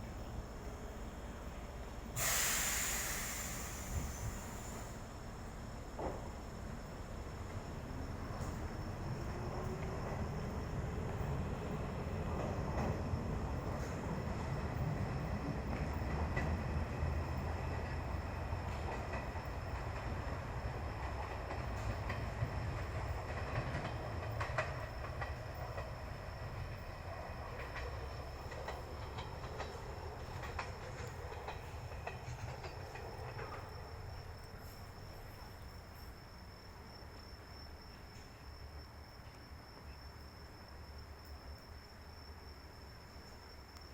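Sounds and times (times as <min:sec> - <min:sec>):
high insect trill: 0:00.0 - 0:43.9
train rumbling on tracks: 0:00.0 - 0:43.9
wheels clicking over rail joints: 0:12.3 - 0:35.8.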